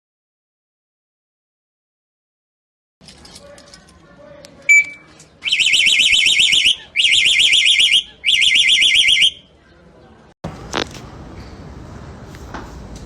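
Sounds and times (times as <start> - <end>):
short sharp beep: 4.7 - 5.7
warbling alarm: 4.7 - 9.4.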